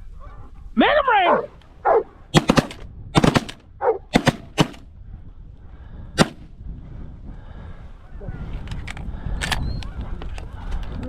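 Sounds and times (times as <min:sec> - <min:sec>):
shotgun shots: 0:02.4 - 0:04.8, 0:06.2 - 0:06.5.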